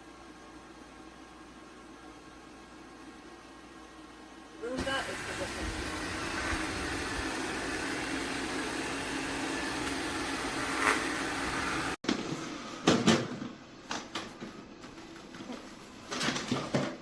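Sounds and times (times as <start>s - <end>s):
robot vacuum motor humming: 4.8s - 12.0s.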